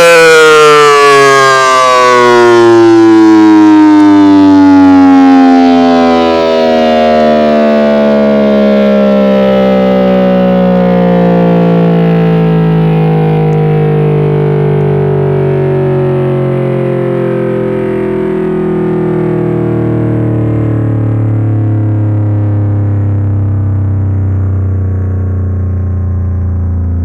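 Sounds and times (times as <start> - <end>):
siren winding down: 0.0 - 27.0.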